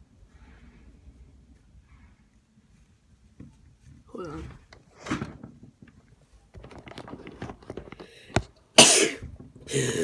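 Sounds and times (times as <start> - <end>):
loud sneeze: 8.8 - 10.0
short breath: 9.7 - 10.0.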